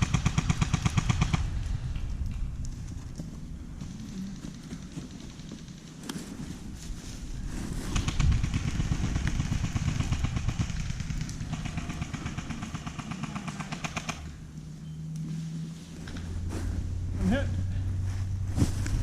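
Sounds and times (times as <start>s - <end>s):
airsoft guns firing full-auto: 0.0s - 1.5s, 7.9s - 14.3s
low rumble: 0.0s - 5.5s, 6.5s - 19.0s.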